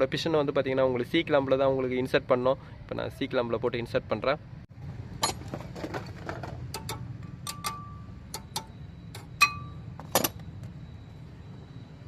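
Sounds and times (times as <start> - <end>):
metal clamp clicking and clinking: 6.7 - 10.4.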